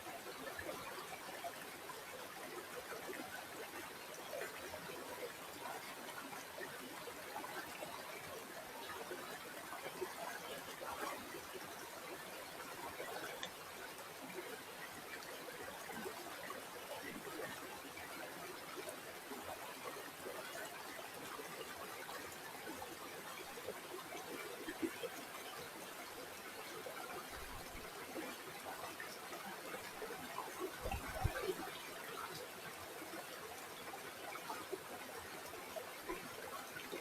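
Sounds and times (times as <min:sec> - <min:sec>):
water trickling over stones: 0:11.2 - 0:16.3, 0:29.2 - 0:34.3.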